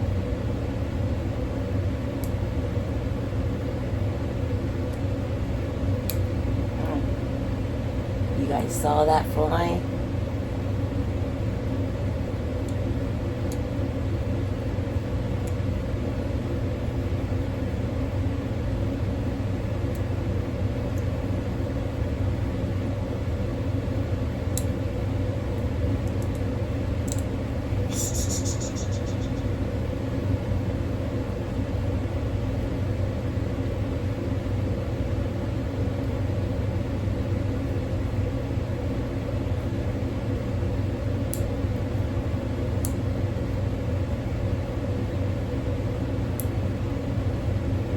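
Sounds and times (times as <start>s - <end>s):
low machine hum: 0.0s - 47.9s
high pulsing scrape: 27.9s - 29.5s.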